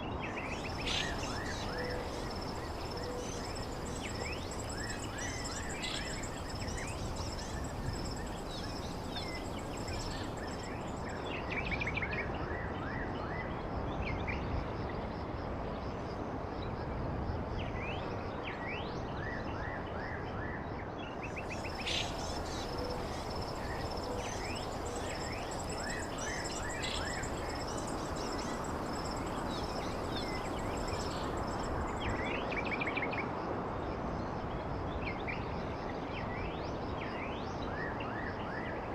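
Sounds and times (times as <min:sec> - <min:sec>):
small birds chirping: 0:00.4 - 0:11.2, 0:21.3 - 0:32.4
high insect-like drone: 0:00.5 - 0:11.1, 0:21.4 - 0:32.2.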